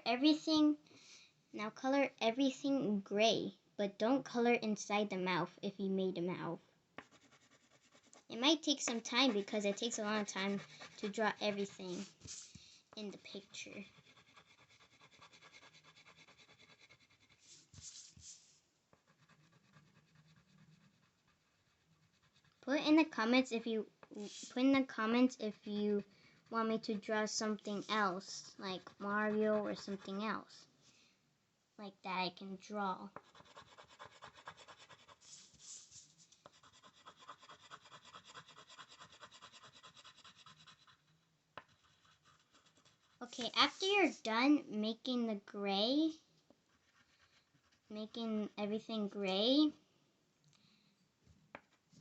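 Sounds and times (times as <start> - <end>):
colouring strokes scratching paper: 7.0 - 23.3, 24.0 - 30.3, 33.1 - 43.8, 46.7 - 47.9.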